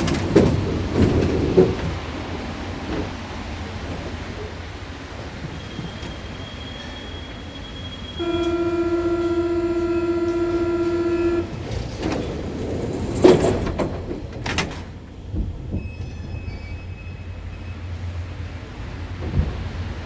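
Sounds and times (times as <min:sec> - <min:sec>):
train doors sliding shut: 0:00.0 - 0:20.0
door-closing warning buzzer: 0:08.1 - 0:11.5.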